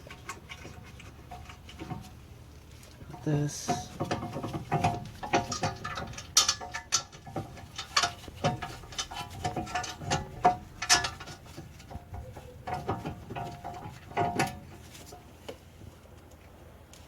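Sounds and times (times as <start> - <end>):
metal tools clinking: 3.1 - 14.8.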